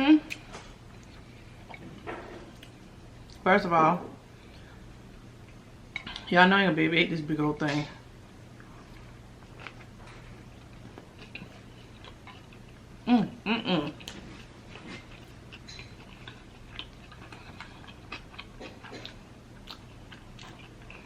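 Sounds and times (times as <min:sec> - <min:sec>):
person chewing: 0:08.6 - 0:21.0.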